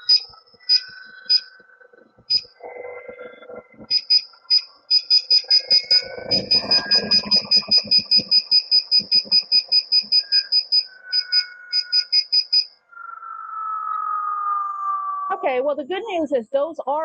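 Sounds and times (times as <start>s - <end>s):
high alarm beeps: 0.0s - 14.2s.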